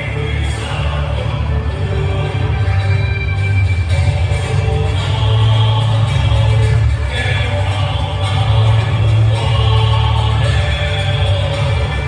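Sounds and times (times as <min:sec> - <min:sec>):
choral singing: 0:00.0 - 0:12.0
heavy steady bass: 0:00.0 - 0:12.0.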